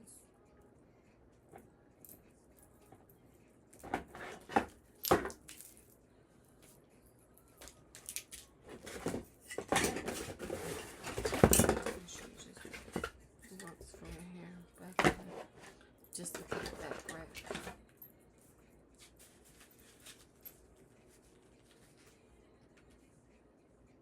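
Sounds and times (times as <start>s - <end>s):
plastic rattling and knocks: 8.8s - 13.1s.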